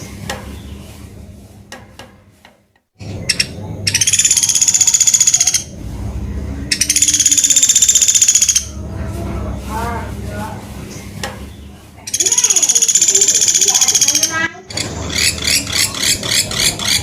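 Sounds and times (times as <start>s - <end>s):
low background rumble: 5.6s - 12.0s
woodpecker high trills: 6.7s - 8.7s.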